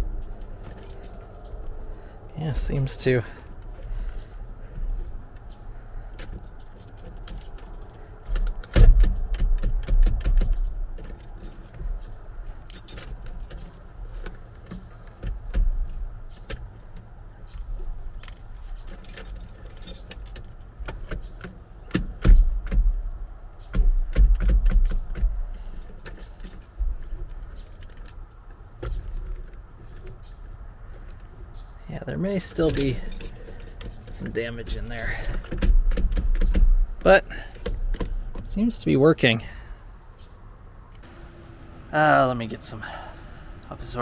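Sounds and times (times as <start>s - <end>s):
steering lock clicks and thumps: 0.0s - 39.4s
keys jangling: 0.4s - 3.2s, 6.2s - 8.9s, 10.6s - 12.1s, 12.7s - 14.2s, 18.7s - 21.3s, 25.1s - 28.5s, 32.4s - 38.2s.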